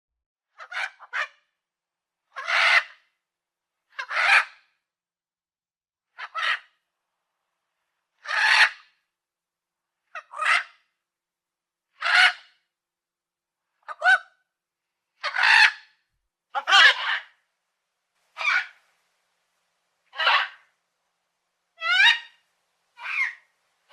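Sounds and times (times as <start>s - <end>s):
parrot squawking: 8.3s - 8.8s, 15.2s - 15.8s, 16.6s - 17.4s, 18.4s - 18.8s, 20.1s - 20.7s, 21.8s - 22.4s, 23.0s - 23.4s.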